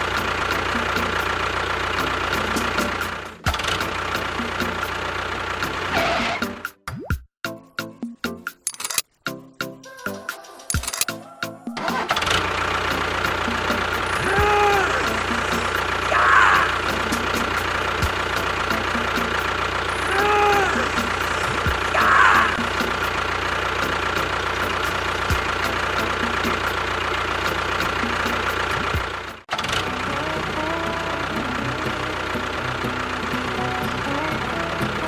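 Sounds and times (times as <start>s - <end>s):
small engine running: 0.0s - 6.6s, 11.9s - 35.0s
short squeal and rasp: 5.9s - 6.6s.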